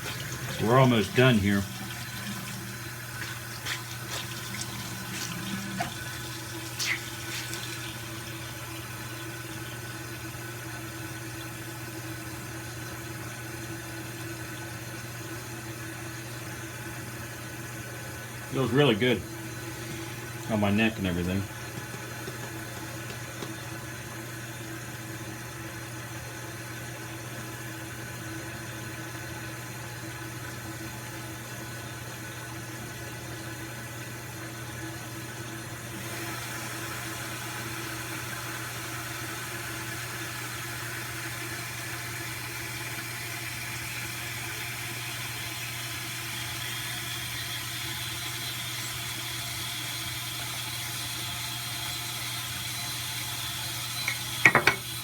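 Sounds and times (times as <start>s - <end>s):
even hiss: 0.0s - 8.3s.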